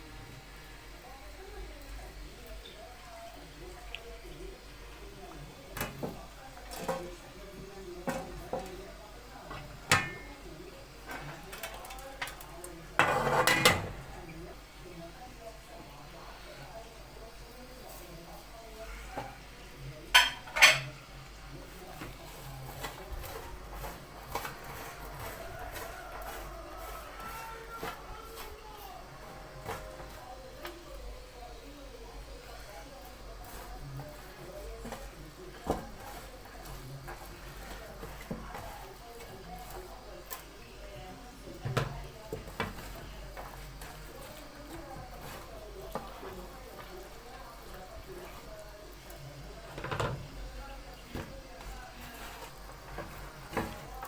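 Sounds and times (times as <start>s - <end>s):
faint background voices: 0.0s - 54.0s
kitchen utensils and dishes clattering: 5.8s - 7.3s, 8.0s - 14.4s, 20.0s - 21.1s, 29.2s - 30.9s.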